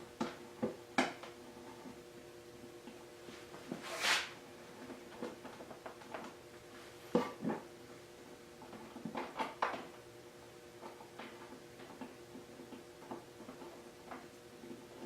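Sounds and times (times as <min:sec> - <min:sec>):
faint steady hum: 0:00.0 - 0:15.0
rustling scrape: 0:03.3 - 0:04.4.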